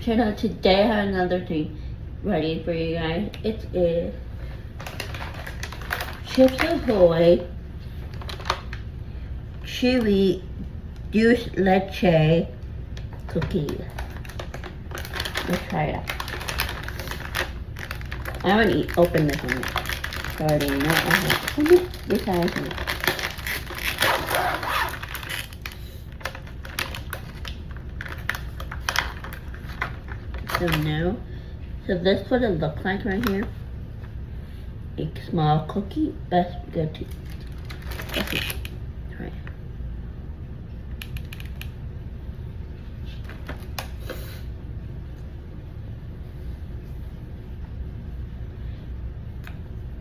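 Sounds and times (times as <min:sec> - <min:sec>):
steady low hum: 0:00.0 - 0:50.0
plastic packaging crackling: 0:04.8 - 0:07.1, 0:08.0 - 0:08.9, 0:13.0 - 0:30.9, 0:37.0 - 0:38.8.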